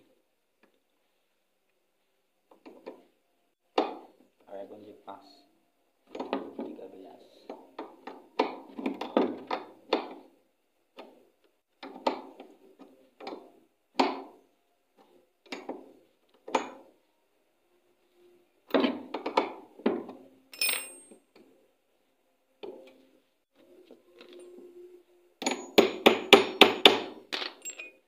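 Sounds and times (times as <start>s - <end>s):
spanner clinking on metal: 20.5s - 21.2s, 27.3s - 28.0s.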